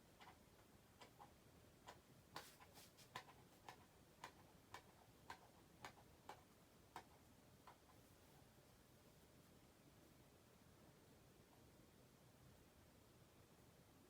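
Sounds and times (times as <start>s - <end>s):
ceiling fan ticking: 0.0s - 8.6s.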